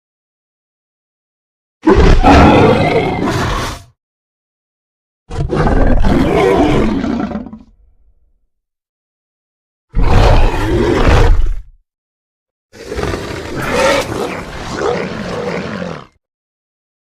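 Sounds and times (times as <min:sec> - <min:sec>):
dragon roars: 0:01.8 - 0:03.9, 0:05.3 - 0:07.7, 0:09.9 - 0:11.7, 0:12.8 - 0:16.2.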